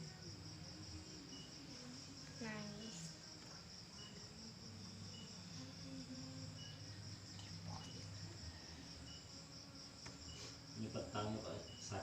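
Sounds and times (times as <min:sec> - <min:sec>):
crickets chirping: 0:00.0 - 0:12.0
faint low hum: 0:00.0 - 0:12.0.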